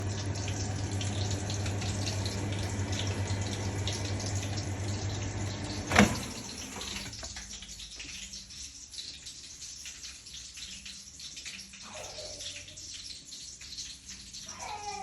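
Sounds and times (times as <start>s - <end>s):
running water splashing: 0.0s - 8.5s.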